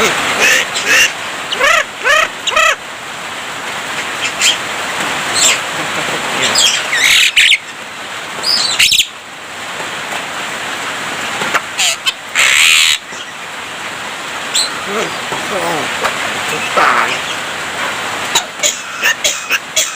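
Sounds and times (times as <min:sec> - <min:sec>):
steady hiss: 0:00.0 - 0:19.9
myna whistling and squawking: 0:05.3 - 0:05.6, 0:06.5 - 0:07.6, 0:08.4 - 0:09.1, 0:14.5 - 0:15.2.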